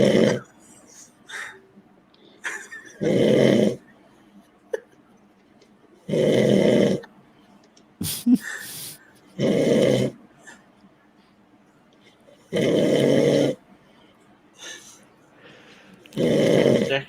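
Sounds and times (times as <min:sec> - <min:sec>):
man snoring: 0:00.0 - 0:00.5, 0:02.9 - 0:03.9, 0:06.0 - 0:07.1, 0:08.2 - 0:10.2, 0:12.5 - 0:13.6, 0:16.1 - 0:17.0.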